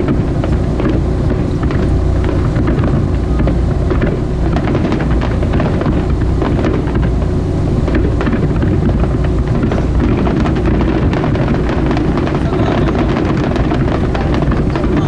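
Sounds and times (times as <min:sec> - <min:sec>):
boat rumble: 0:00.0 - 0:15.0
fireworks bursting and crackling: 0:00.0 - 0:15.0
wind on microphone: 0:00.0 - 0:15.0.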